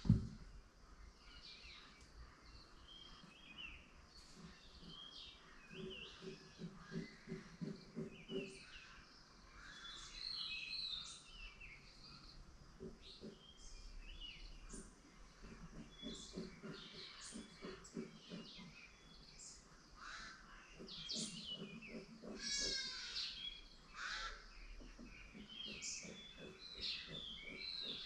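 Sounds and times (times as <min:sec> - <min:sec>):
birds chirping and trilling: 0:00.0 - 0:28.0
low repeated animal call: 0:20.0 - 0:24.5.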